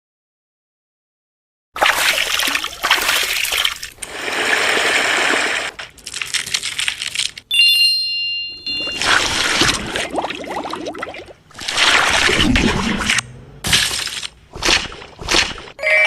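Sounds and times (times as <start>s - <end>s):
makeup packaging crackling and rustling: 5.8s - 7.5s
bright ringing chime: 7.5s - 9.5s.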